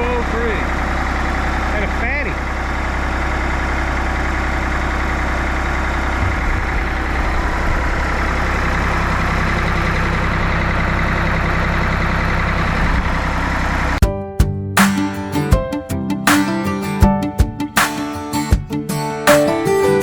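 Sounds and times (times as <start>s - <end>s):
acoustic guitar strum: 14.0s - 20.0s.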